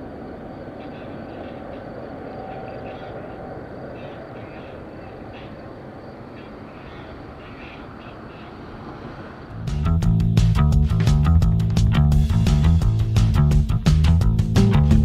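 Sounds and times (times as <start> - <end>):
distant jet engine rumble: 0.0 - 14.6
guitar music: 9.5 - 15.0.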